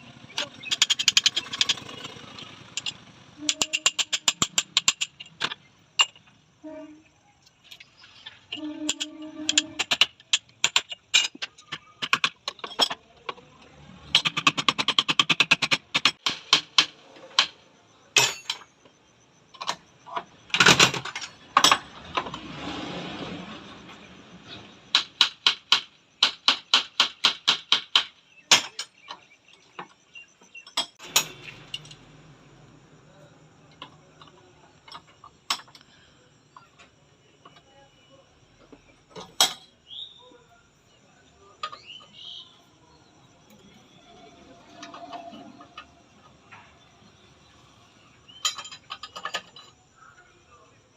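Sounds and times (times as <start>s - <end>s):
rapid metal clicks: 0.4s - 6.3s, 14.1s - 17.6s.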